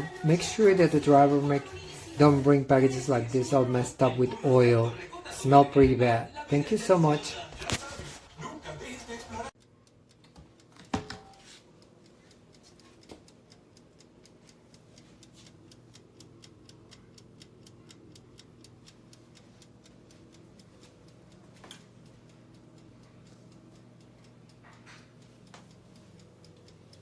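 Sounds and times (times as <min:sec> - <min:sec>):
wind-up timer ticking: 0:09.6 - 0:27.0.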